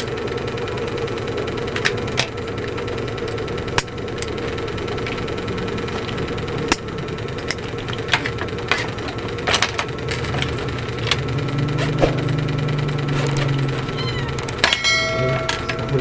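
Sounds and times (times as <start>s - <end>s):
low hum: 0.0s - 16.0s.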